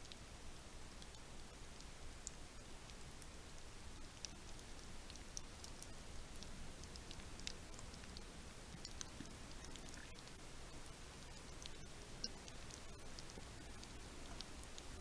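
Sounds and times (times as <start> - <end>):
faint high clicks and crackles: 0.0 - 15.0
low hiss: 0.0 - 15.0.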